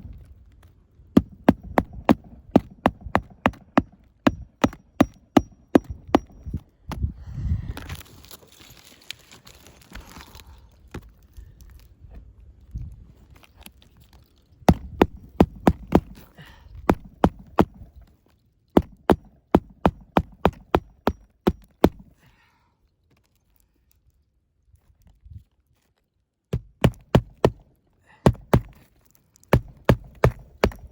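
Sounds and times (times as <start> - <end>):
hammer knocking on shingle roof: 1.2 - 6.6, 14.7 - 16.2, 16.9 - 17.8, 18.8 - 22.1, 26.6 - 27.6, 28.3 - 28.8, 29.5 - 30.9.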